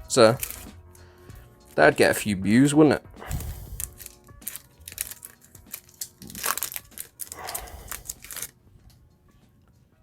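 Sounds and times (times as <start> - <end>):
foil wrapper crinkling: 0.3 - 0.7, 3.3 - 8.6.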